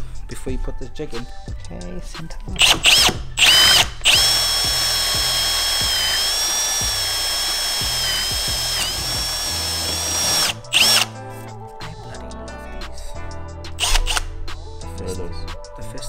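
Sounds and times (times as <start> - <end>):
power drill whining: 2.6 - 11.1, 13.8 - 14.2.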